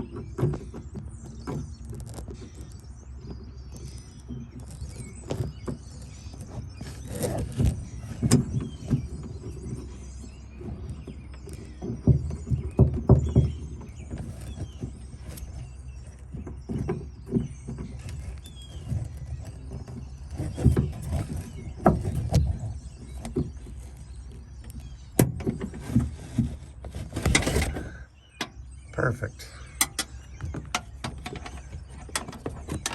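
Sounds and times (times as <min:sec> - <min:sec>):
metal parts clunking in car door: 0:25.1 - 0:28.6, 0:29.7 - 0:32.9.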